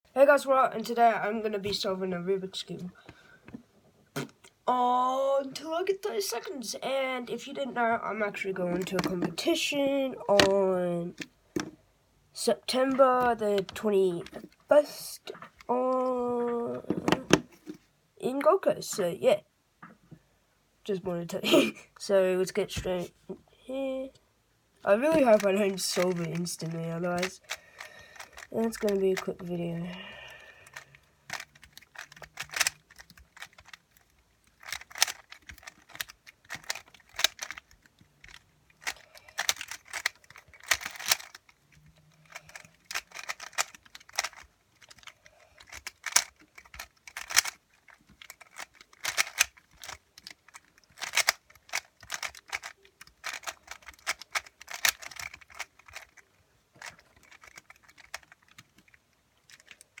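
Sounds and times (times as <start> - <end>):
puzzle cube layers clicking: 8.6 - 9.6, 24.8 - 29.7, 30.6 - 60.0.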